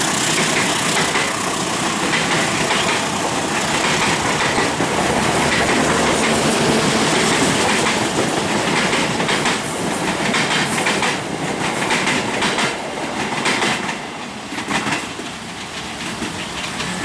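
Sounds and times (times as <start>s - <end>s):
train wheels clattering over rails: 0.0s - 17.0s.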